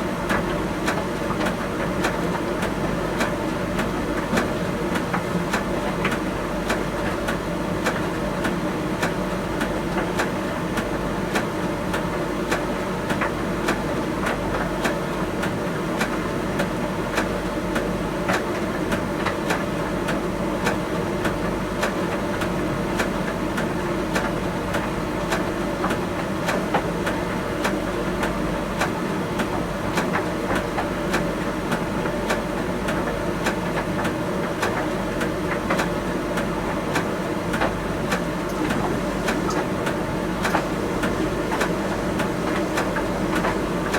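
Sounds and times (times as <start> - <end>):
tumble dryer humming: 36.4 - 43.9.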